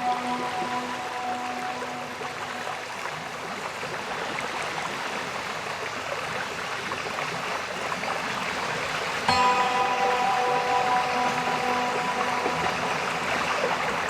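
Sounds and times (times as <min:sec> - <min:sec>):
ambient background music: 0:00.0 - 0:03.8, 0:09.3 - 0:14.0
waterfall rushing water: 0:00.0 - 0:14.0.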